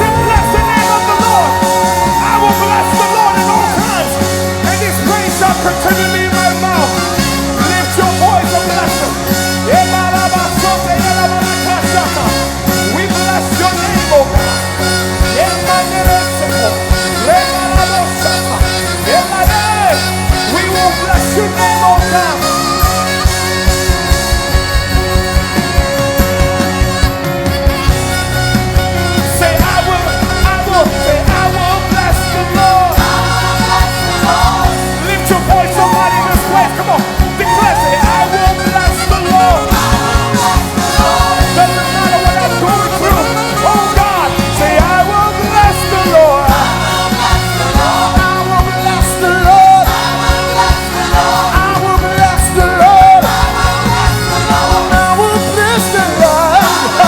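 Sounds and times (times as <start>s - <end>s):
gospel band playing: 0.0s - 57.0s
person singing ornamented lines: 29.2s - 57.0s.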